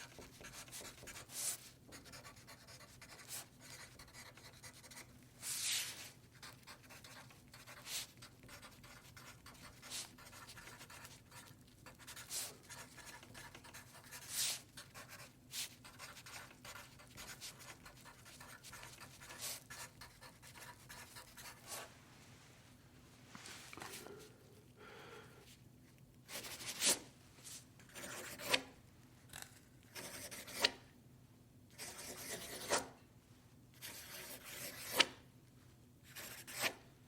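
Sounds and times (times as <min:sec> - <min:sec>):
pen scratching on paper: 0:00.0 - 0:21.9, 0:27.9 - 0:28.6, 0:29.9 - 0:30.8, 0:31.8 - 0:32.9, 0:33.8 - 0:35.1, 0:36.1 - 0:36.8.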